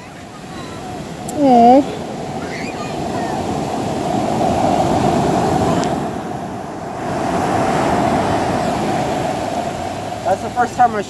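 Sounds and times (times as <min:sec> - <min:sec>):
ocean waves washing ashore: 0:00.0 - 0:11.0.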